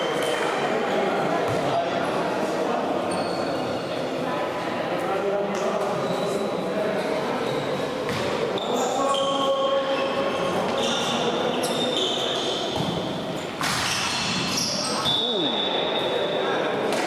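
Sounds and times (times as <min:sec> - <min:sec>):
murmur of voices: 0:00.0 - 0:17.0
ball bouncing and thudding: 0:12.8 - 0:14.6.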